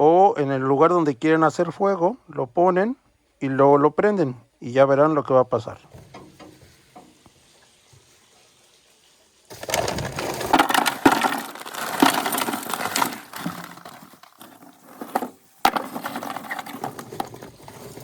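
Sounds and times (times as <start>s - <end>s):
charcoal lumps clattering: 5.8s - 8.2s, 9.5s - 18.0s.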